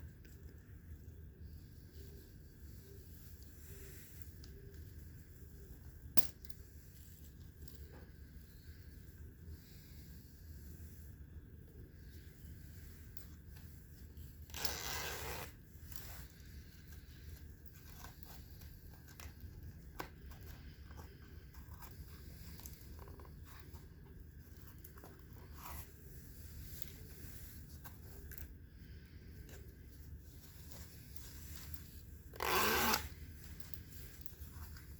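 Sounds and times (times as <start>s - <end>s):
low steady hum: 0.0s - 34.9s
rustling: 0.1s - 34.9s
rasping leather tear: 32.4s - 33.0s.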